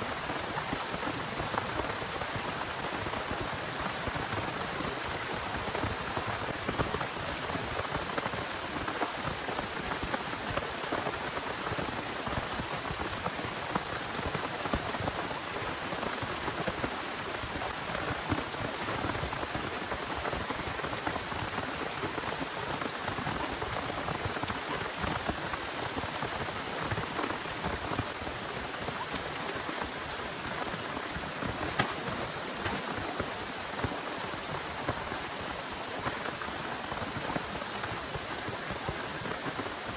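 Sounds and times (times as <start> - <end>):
heavy rain: 0.0 - 39.9
close raindrop hits: 0.2 - 39.6.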